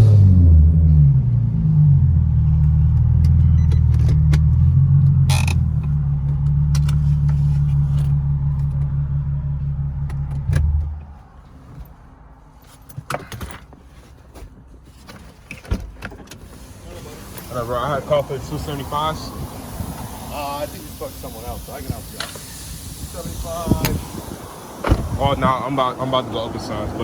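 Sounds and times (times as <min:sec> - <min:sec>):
car engine idling: 0:00.0 - 0:12.1, 0:16.5 - 0:27.0.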